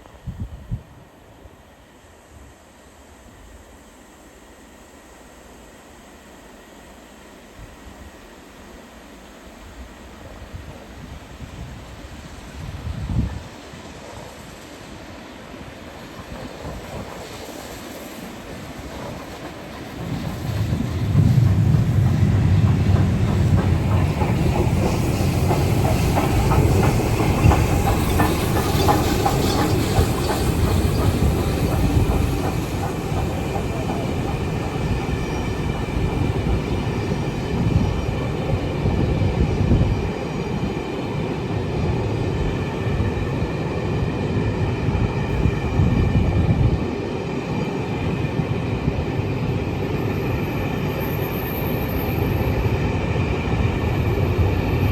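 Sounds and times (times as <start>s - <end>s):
steam locomotive exhaust beats: 10.6s - 46.9s
train wheels clattering over rails: 15.6s - 54.9s.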